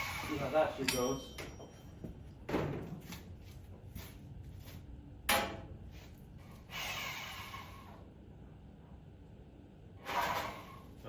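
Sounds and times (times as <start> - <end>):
sharp metallic clack: 0.8 - 1.7.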